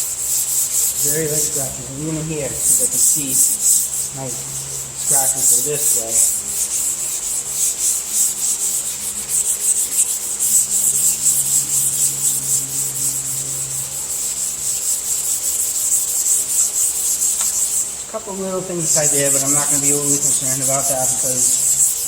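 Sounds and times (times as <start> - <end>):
scuff pad rubbing car panel: 2.4 - 18.0.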